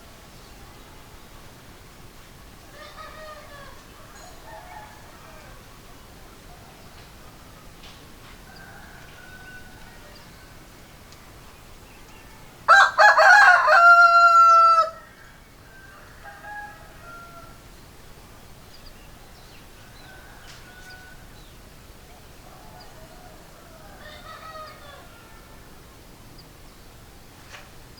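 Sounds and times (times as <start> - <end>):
rooster crowing: 2.8 - 5.7, 8.4 - 10.6, 12.7 - 17.6, 19.8 - 21.5, 22.5 - 25.7.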